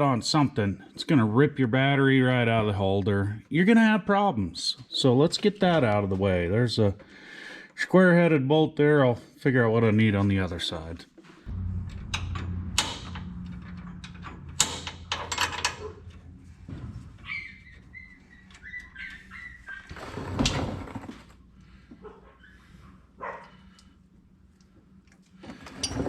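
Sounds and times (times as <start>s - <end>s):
metal knocks: 11.5s - 19.2s
low steady hum: 11.5s - 25.4s
high squeaky stretch: 15.6s - 21.0s.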